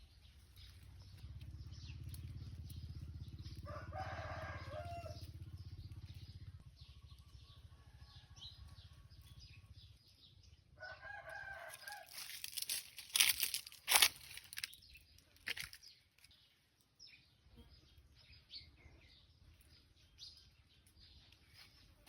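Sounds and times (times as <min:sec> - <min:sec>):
rooster crowing: 0:03.6 - 0:05.4, 0:10.8 - 0:12.3.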